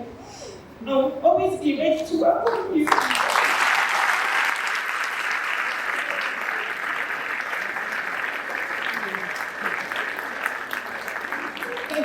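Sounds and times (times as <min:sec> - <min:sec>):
audience applauding: 0:02.5 - 0:12.0.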